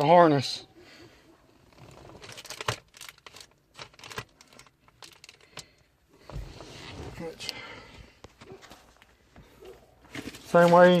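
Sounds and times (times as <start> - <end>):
plastic clicks and crinkling: 1.7 - 5.9.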